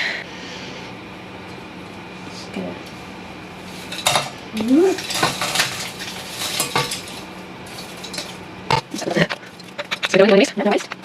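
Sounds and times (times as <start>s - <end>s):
utensils clattering against pot: 3.8s - 11.0s.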